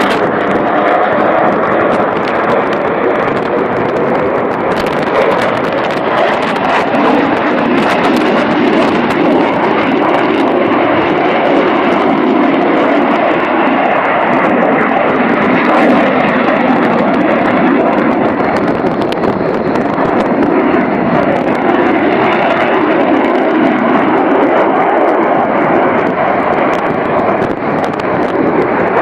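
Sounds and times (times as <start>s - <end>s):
aircraft engine: 0.0s - 29.0s.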